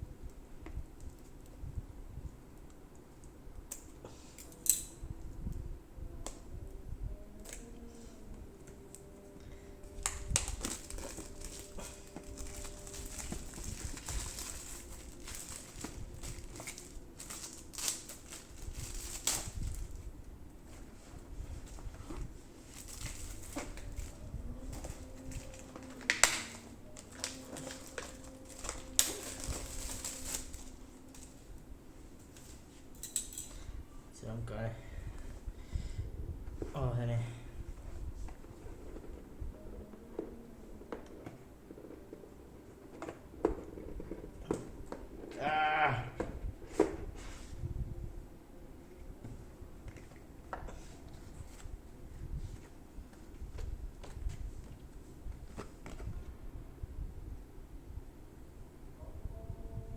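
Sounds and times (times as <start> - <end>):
packaging being opened by hand: 8.6 - 20.1, 20.7 - 33.2.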